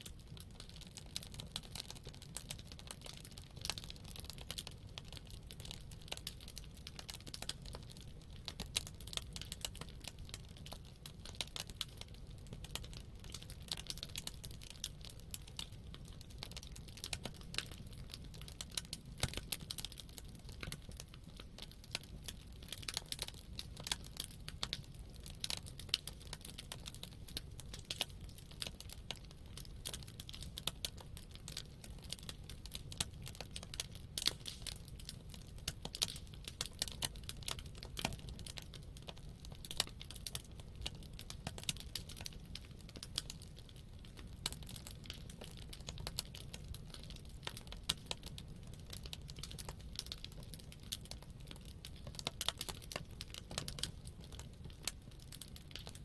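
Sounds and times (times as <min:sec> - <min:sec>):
campfire snaps and pops: 0:00.0 - 0:56.0
low fire rumble: 0:00.0 - 0:56.0.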